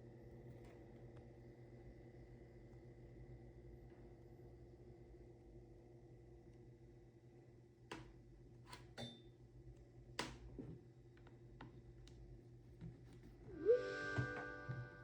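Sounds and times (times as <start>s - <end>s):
low steady hum: 0.0s - 15.0s
faint clicks and taps: 10.2s - 13.4s.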